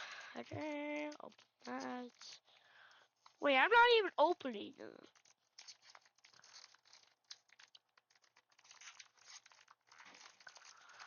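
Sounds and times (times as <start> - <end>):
foil wrapper crinkling: 0.0 - 11.0.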